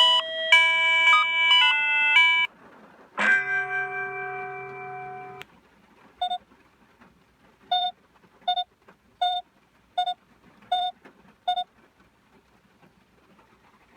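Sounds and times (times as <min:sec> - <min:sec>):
short electronic beeps: 0:07.7 - 0:07.9, 0:08.5 - 0:09.4, 0:10.0 - 0:10.9, 0:11.5 - 0:11.7.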